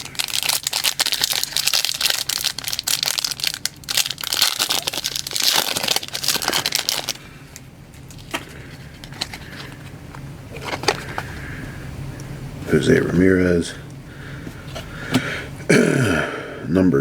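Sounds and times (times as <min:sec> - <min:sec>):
wrapper tearing and crinkling: 0:00.0 - 0:07.2.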